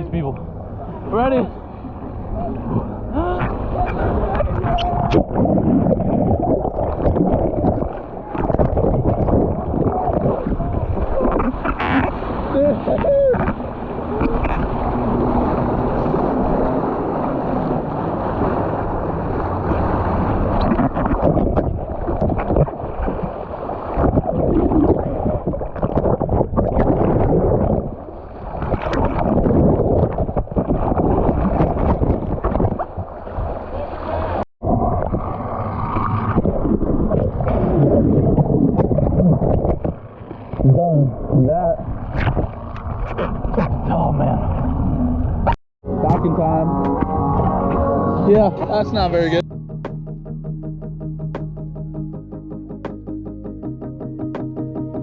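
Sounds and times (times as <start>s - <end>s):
wind buffeting microphone: 0.0s - 48.6s
rushing water: 0.0s - 49.4s
motorboat engine drone: 13.5s - 20.6s.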